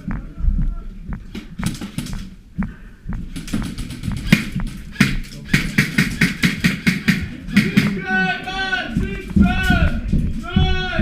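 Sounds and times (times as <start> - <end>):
airsoft guns firing: 3.3 - 8.0.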